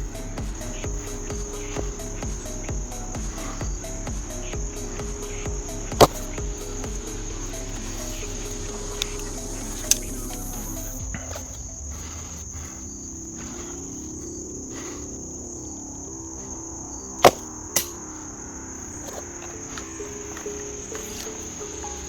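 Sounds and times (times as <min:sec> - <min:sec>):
crickets chirring: 0:00.0 - 0:22.0
sharp snaps: 0:17.2 - 0:18.2.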